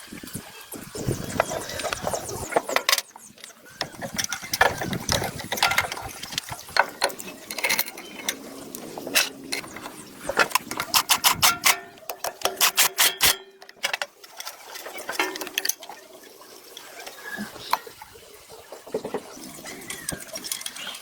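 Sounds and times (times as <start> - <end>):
hand tools clicking on metal: 2.6 - 15.9.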